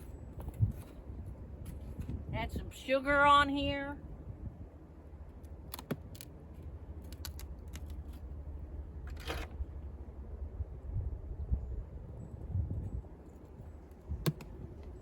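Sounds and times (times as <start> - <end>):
wind on microphone: 0.0 - 4.8, 10.5 - 15.0.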